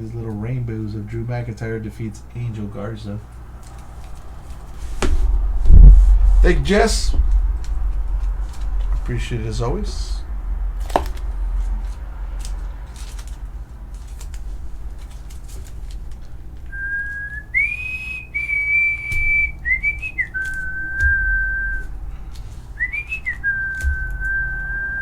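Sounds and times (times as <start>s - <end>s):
person whistling a tune: 16.7s - 22.0s, 22.8s - 25.0s.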